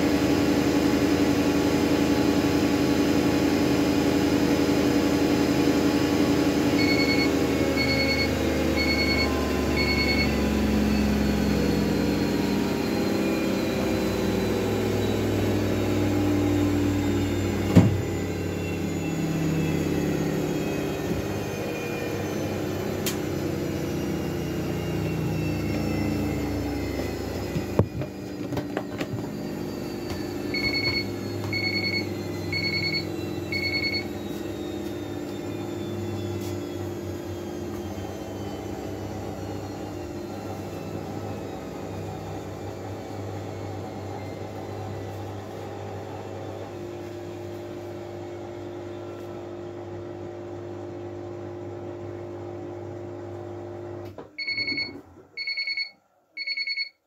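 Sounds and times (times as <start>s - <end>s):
washing machine hum: 0.0s - 57.0s
washing machine beeps: 5.4s - 49.3s, 54.4s - 57.0s
washing machine drum winding down: 6.4s - 46.8s, 54.4s - 55.8s.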